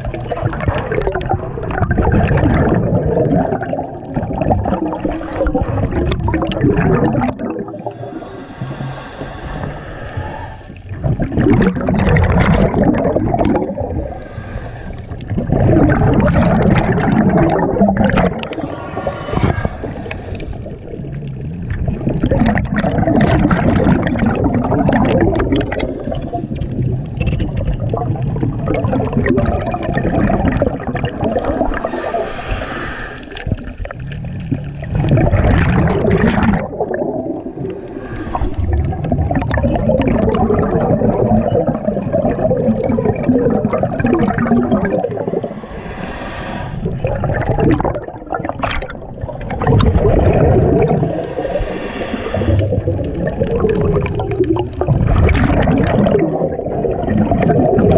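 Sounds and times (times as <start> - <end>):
gurgling exhaust bubbles: 0.0 - 9.0, 10.8 - 14.3, 14.9 - 32.2, 33.3 - 46.0, 46.8 - 57.9
regulator breathing hiss: 7.8 - 10.9, 14.1 - 15.2, 18.5 - 20.9, 31.5 - 33.8, 37.5 - 38.7, 45.4 - 47.0, 51.1 - 52.9.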